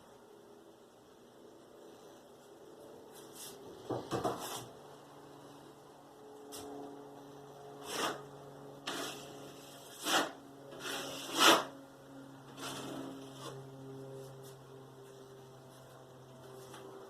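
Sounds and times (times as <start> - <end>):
steady low hum: 0.0 - 17.0
drywall knife scraping: 7.8 - 11.8, 12.5 - 13.6.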